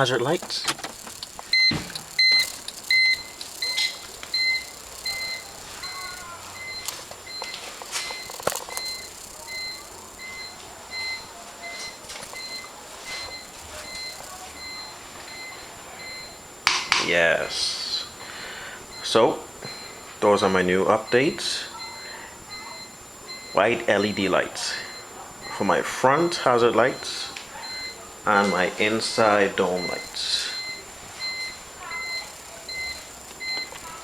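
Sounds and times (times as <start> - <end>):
hazard flasher beeping: 0.0 - 34.0.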